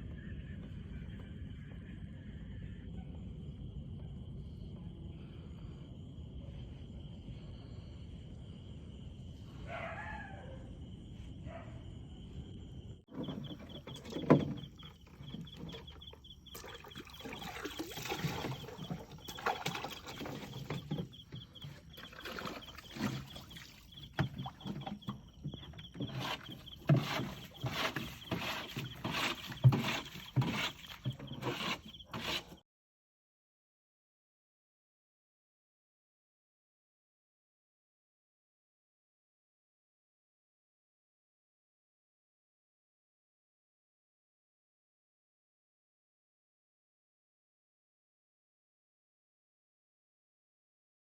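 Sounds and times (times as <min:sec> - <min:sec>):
crickets trilling: 0:00.2 - 0:32.6.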